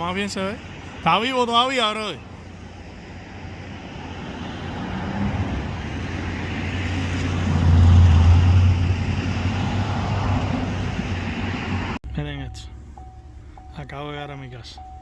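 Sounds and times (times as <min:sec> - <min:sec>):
vehicle passing by: 0:02.5 - 0:12.0.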